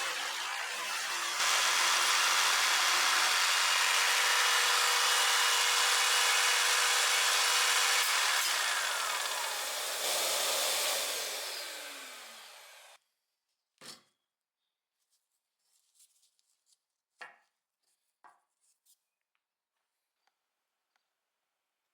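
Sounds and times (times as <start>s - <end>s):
jigsaw sawing wood: 0.0s - 13.0s.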